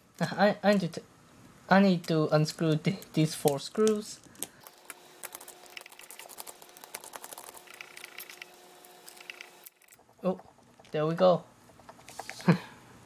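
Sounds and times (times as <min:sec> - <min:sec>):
screwdriver clicking on screws: 0:04.6 - 0:10.0.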